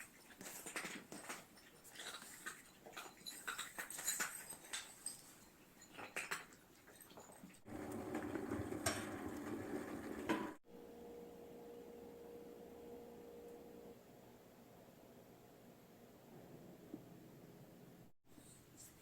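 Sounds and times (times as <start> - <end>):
cats eating crunchily: 0.0 - 8.6.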